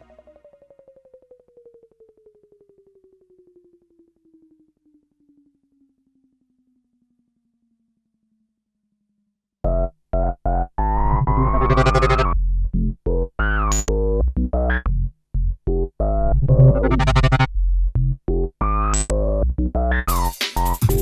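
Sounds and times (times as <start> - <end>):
choppy synthesizer chords: 9.7 - 15.0, 15.7 - 17.5, 18.3 - 21.0
drum beat: 20.1 - 21.0.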